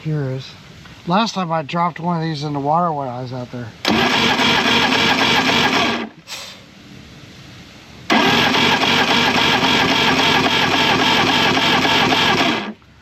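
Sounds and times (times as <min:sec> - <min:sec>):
electric starter cranking engine: 0:03.8 - 0:06.2, 0:08.1 - 0:12.8.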